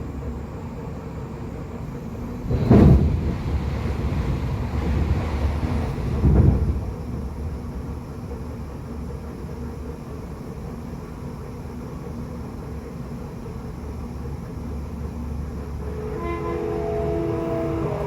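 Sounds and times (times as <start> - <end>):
train wheels rumbling on rail: 0.0 - 18.0.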